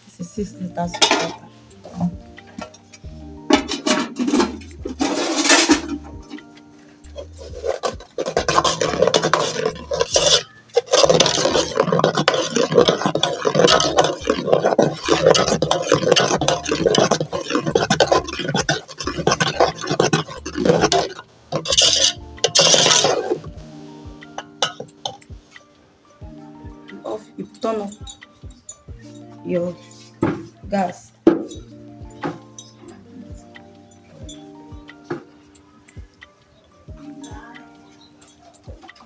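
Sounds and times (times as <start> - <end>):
soft background music: 0.0 - 39.0
cup scraping a metal pot: 0.9 - 2.8, 3.4 - 6.5, 7.1 - 25.2.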